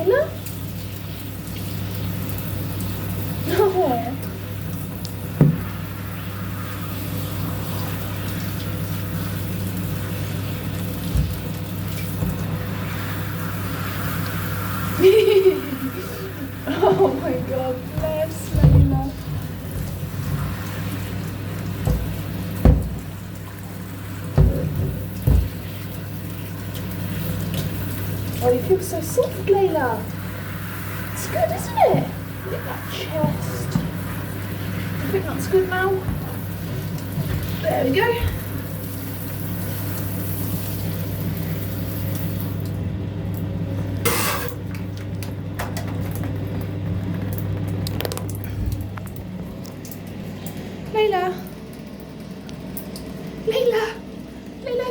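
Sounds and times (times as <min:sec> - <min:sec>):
shower water running and splashing: 0:00.0 - 0:54.9
dull knocks: 0:21.9 - 0:23.0.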